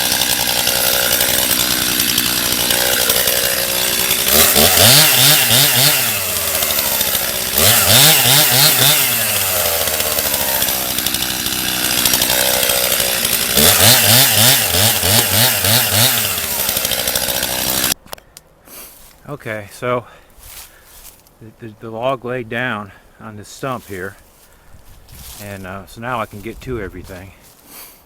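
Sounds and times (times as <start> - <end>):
chainsaw cutting log: 0.0 - 18.0.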